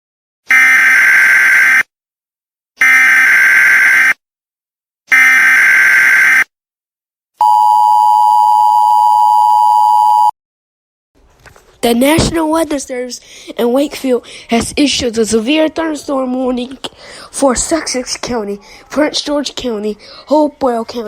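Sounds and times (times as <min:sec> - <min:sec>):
two-tone attention signal: 0:07.4 - 0:10.3.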